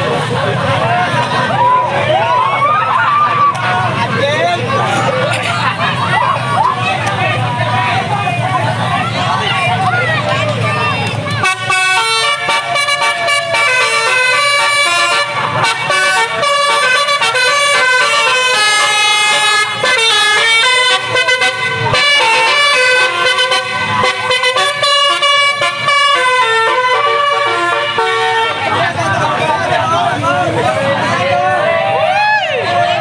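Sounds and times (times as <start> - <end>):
multi-trumpet air horn tune: 11.4 - 28.8.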